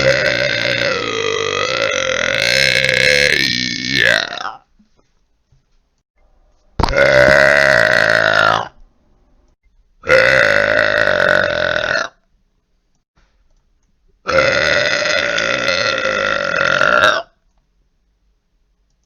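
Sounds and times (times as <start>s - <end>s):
long loud burps: 0.0s - 4.7s, 6.8s - 8.8s, 10.0s - 12.2s, 14.3s - 17.4s.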